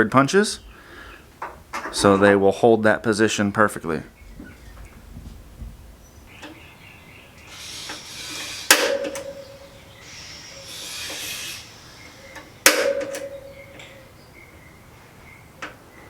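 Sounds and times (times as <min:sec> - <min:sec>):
hissing scrape: 0:07.4 - 0:13.6
metal-on-metal strikes ringing: 0:08.7 - 0:09.8, 0:12.6 - 0:14.0.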